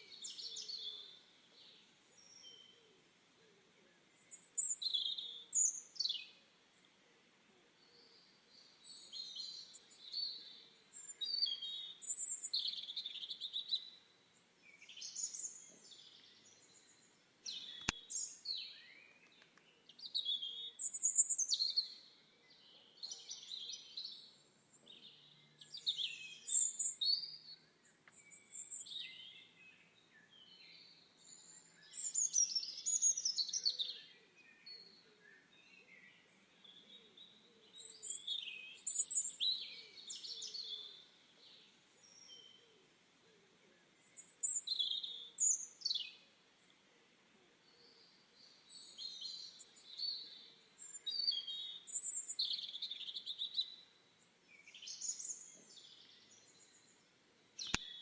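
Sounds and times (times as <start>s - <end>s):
songbirds singing: 0.0s - 58.0s
sharp click: 17.8s - 18.0s, 57.6s - 57.9s.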